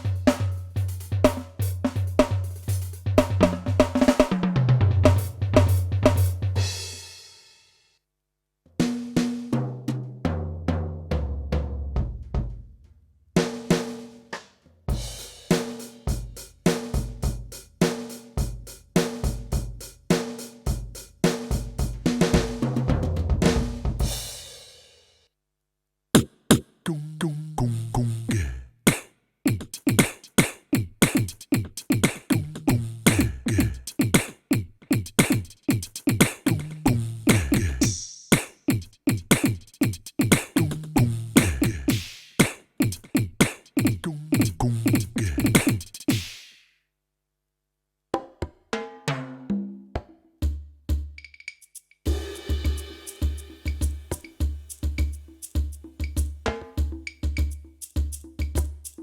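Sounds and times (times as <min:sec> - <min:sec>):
electronic drum groove: 0:00.0 - 0:06.5, 0:14.9 - 0:24.4, 0:26.2 - 0:46.5, 0:50.5 - 0:59.0
cymbal ringing: 0:52.1 - 0:54.4.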